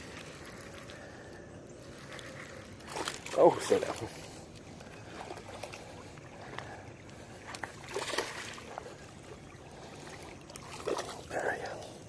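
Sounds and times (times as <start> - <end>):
fish splashing at water surface: 7.6 - 11.3.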